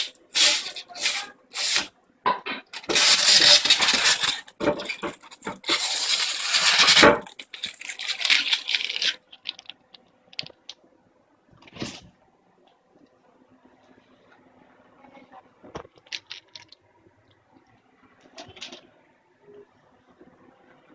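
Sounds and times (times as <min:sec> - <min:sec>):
plastic packaging rustling: 0:00.0 - 0:01.9, 0:02.7 - 0:09.8.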